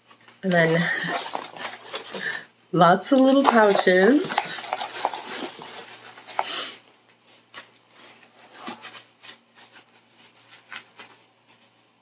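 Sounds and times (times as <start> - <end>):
pouch rustling: 0.5 - 2.4, 3.2 - 6.8.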